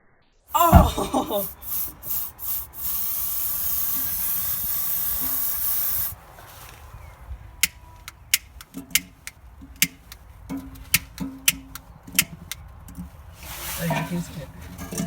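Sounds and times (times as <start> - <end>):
aerosol can spraying: 0.5 - 6.2.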